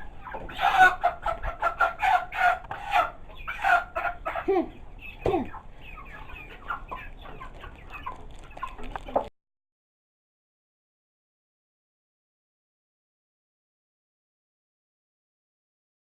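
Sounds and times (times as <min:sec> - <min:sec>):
chickens clucking and squawking: 0:00.0 - 0:09.3.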